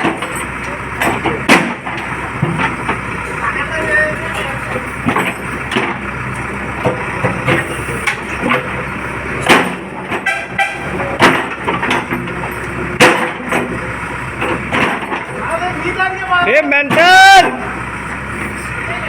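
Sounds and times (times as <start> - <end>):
diesel engine running under load: 0.0 - 19.0
concrete being struck and broken: 1.0 - 2.8, 13.0 - 13.7.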